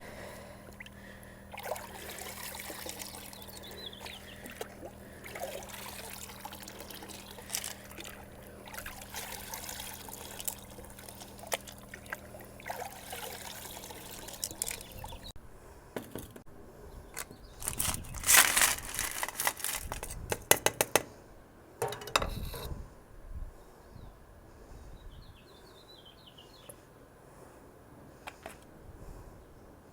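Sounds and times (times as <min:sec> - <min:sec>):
low steady hum: 0:00.0 - 0:20.5
water trickling over rocks: 0:00.7 - 0:15.3.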